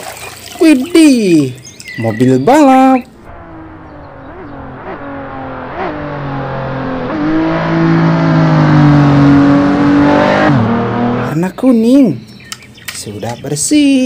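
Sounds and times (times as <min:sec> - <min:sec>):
race car engine revving: 0:03.0 - 0:11.5.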